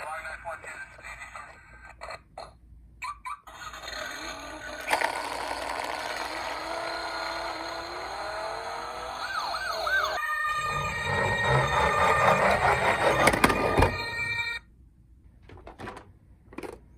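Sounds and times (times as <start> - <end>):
toy electronic siren: 3.5 - 14.6.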